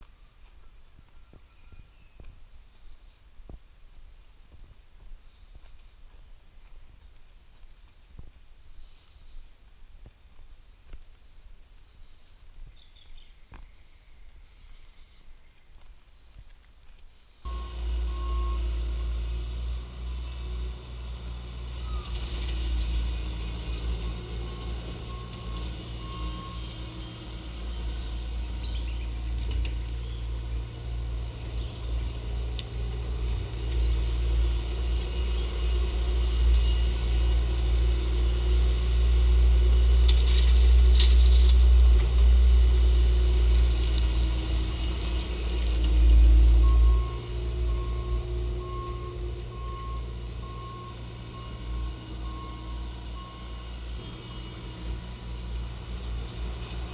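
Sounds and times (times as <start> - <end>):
reversing alarm beeping: 17.5 - 20.0, 24.0 - 28.0, 46.0 - 54.4
loader diesel engine working: 17.5 - 56.9.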